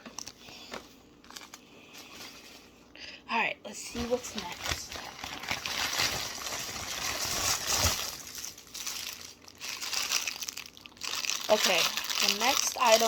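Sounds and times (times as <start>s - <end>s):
packaging crinkling and rustling: 0.0s - 2.7s, 4.0s - 13.0s.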